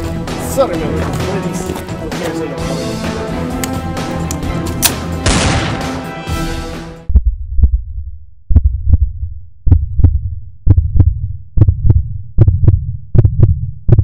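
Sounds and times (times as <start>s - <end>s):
heartbeat thumps: 7.0s - 14.0s.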